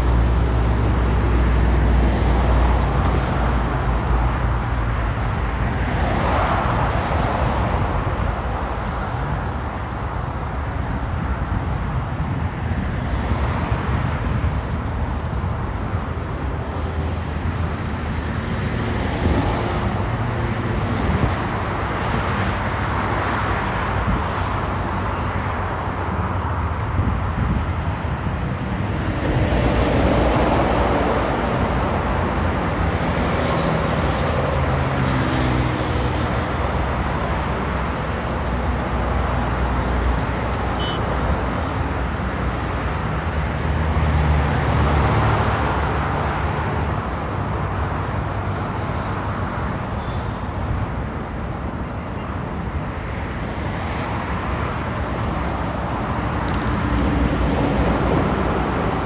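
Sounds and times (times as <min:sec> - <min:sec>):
road traffic passing: 0:00.0 - 0:59.0.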